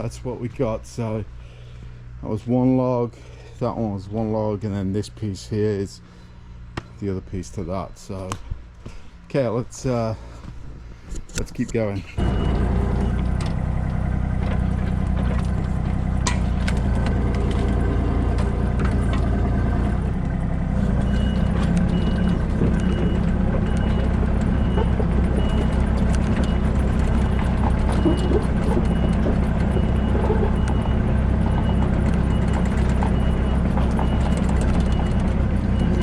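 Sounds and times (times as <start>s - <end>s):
back-up alarm beeping: 12.2s - 13.3s, 21.0s - 36.0s
heavy machine engine running: 12.2s - 36.0s.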